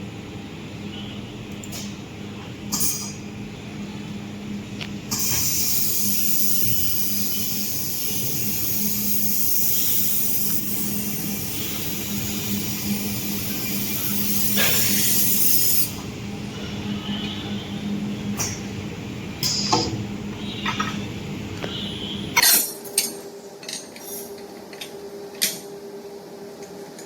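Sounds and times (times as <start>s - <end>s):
machine hum: 0.0s - 22.4s
laser welding hiss: 5.1s - 16.0s.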